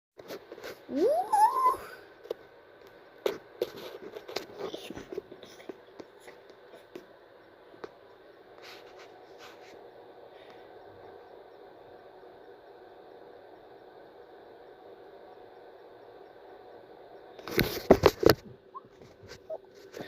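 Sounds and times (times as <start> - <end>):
faint steady hum: 0.2 - 20.0
light taps and scrapes: 3.2 - 7.1.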